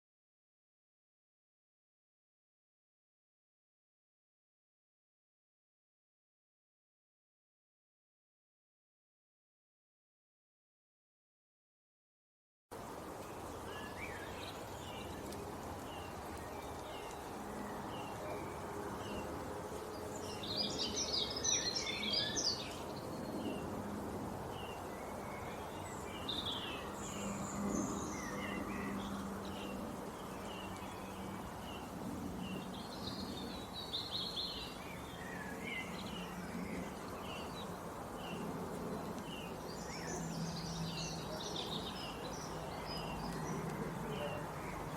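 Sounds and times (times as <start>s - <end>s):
steady background hiss: 12.8s - 44.9s
birds chirping and singing: 13.4s - 23.7s.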